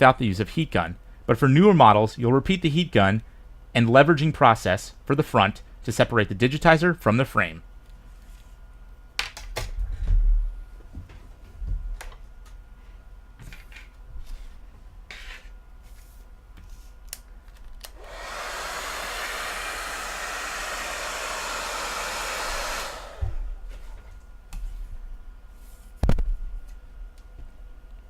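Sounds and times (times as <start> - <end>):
heat gun blowing air: 17.9 - 23.6.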